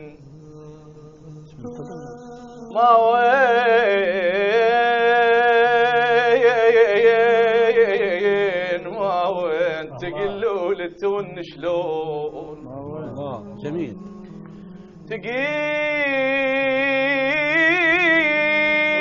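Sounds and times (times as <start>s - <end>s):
person singing a long wavering note: 12.3s - 17.2s
steady low drone: 12.6s - 15.4s.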